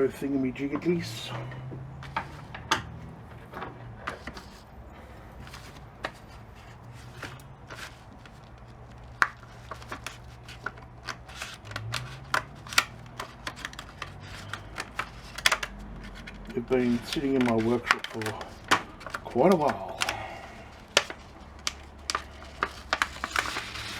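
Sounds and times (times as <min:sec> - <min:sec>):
clicks and crackles of handled packet: 0:05.4 - 0:23.9.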